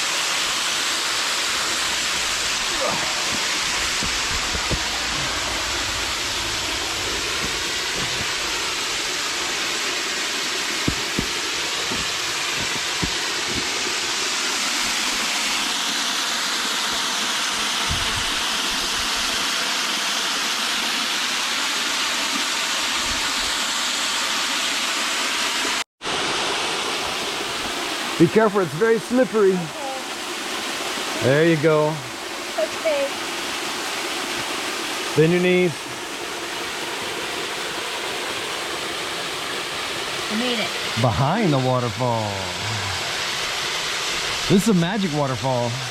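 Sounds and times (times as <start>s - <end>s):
waterfall rushing: 0.0s - 45.9s
low thumps: 2.1s - 9.1s.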